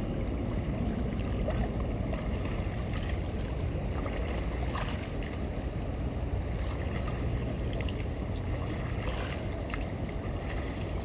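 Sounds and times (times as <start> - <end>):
boat engine low rumble: 0.0 - 11.0
water noise: 0.0 - 11.0.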